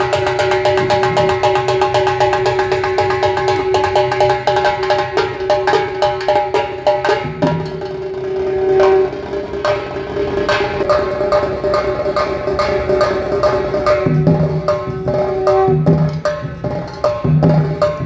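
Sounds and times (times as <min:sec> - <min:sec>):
ringing percussion strikes: 0:00.0 - 0:18.0
conch shell blown: 0:08.2 - 0:09.4.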